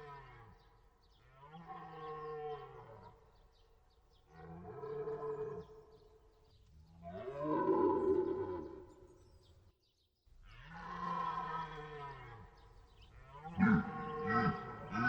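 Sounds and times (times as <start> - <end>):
deer stag roaring: 7.1 - 8.9, 13.3 - 15.0.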